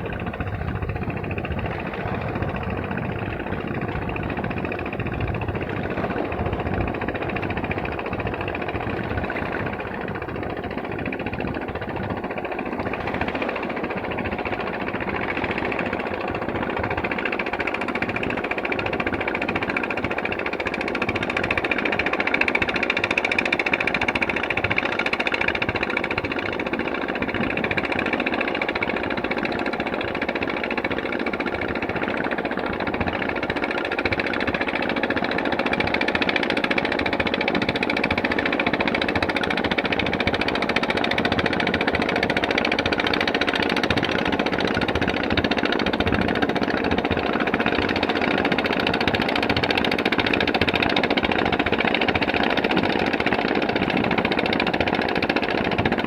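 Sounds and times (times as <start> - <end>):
engine running: 0.0 - 56.0.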